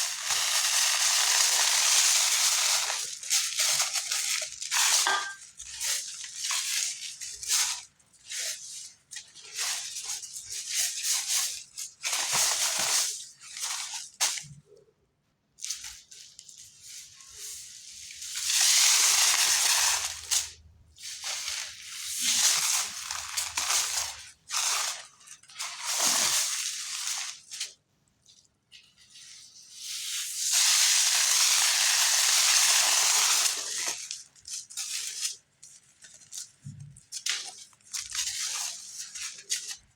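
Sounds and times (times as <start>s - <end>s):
cement chunks crumbling: 4.5s - 5.8s.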